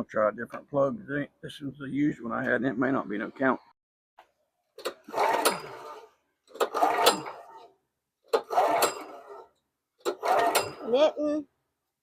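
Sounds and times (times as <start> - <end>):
engine pull-starter click and whir: 4.8 - 5.9, 10.0 - 10.9.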